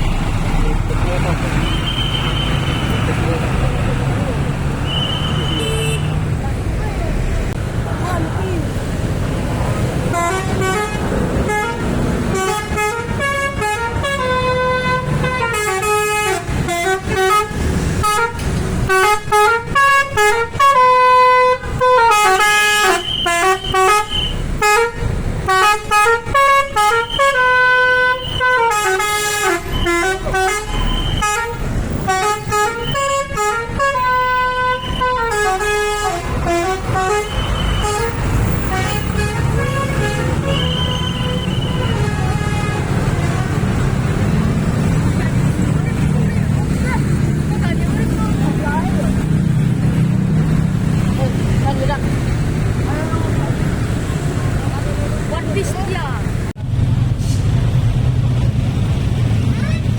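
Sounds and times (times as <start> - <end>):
engine rumble: 0.0 - 59.9
traffic: 0.0 - 59.9
multi-tone bus horn melody: 4.8 - 6.2, 10.0 - 45.0.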